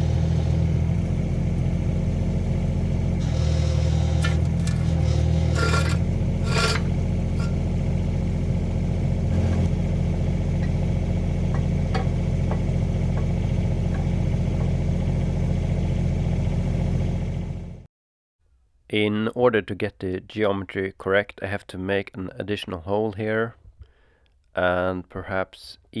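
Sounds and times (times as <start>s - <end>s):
excavator engine running: 0.0s - 17.9s
metal clanks: 3.2s - 15.4s.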